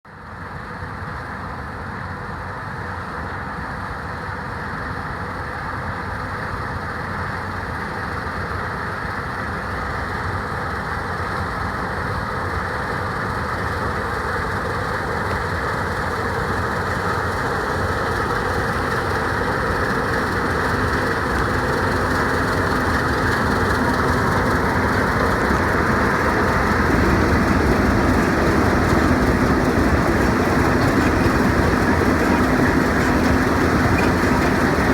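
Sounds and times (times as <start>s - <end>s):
combine harvester droning: 17.2s - 34.9s.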